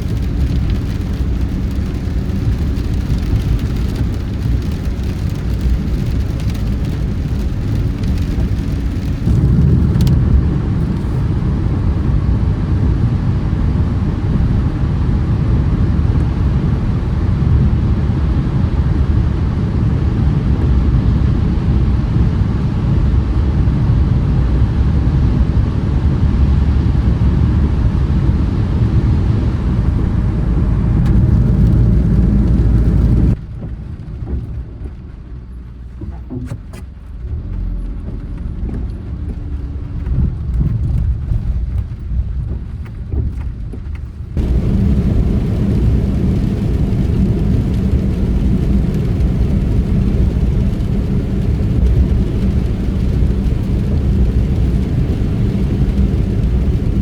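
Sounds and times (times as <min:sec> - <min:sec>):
car road noise rumble: 0:00.0 - 0:57.0.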